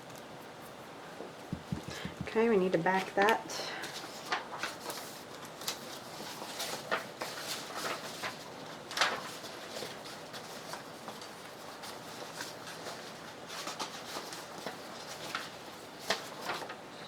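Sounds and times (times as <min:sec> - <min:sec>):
small taps and clicks: 0:01.5 - 0:02.4
paper rustling: 0:03.0 - 0:16.8.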